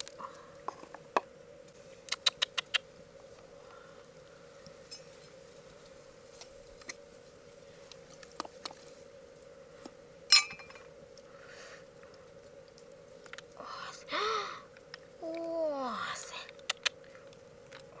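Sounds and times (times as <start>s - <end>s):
steady low hum: 0.0s - 18.0s
faint wet clicks: 2.1s - 2.9s, 16.4s - 17.9s.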